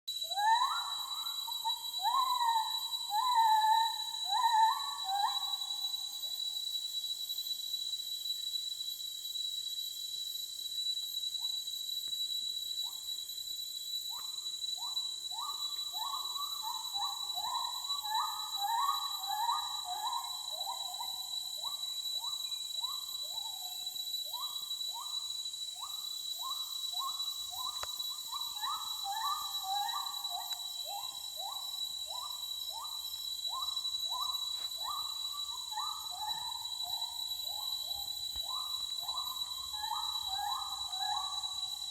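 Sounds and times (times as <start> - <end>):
animal calls sweeping upward: 38.5 - 41.5.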